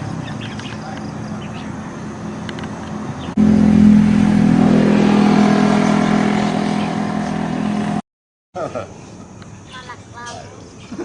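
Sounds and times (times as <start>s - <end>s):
vehicle engine running: 0.0s - 8.0s.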